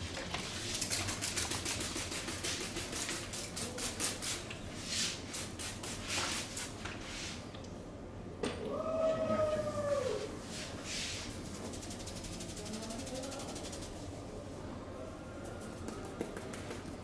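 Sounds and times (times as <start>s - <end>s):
rapid hand slaps on body: 15.9s - 17.0s.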